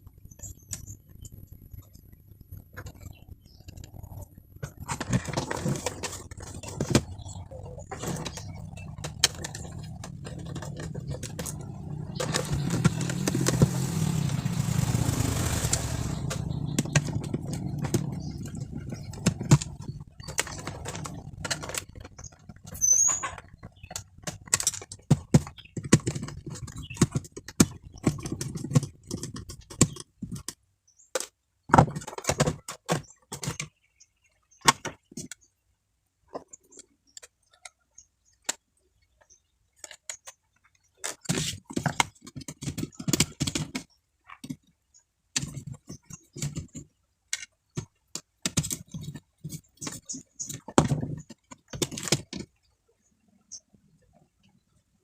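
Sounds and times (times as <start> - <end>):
motor vehicle running: 0.1 - 22.8.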